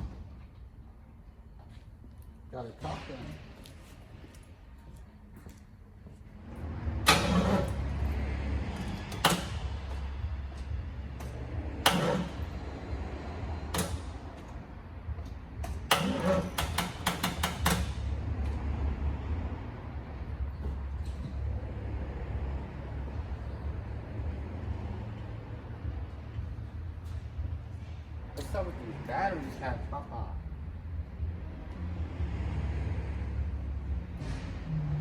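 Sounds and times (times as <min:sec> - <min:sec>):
sharp clicks and knocks: 0:08.8 - 0:12.6, 0:13.6 - 0:14.6, 0:15.2 - 0:18.6.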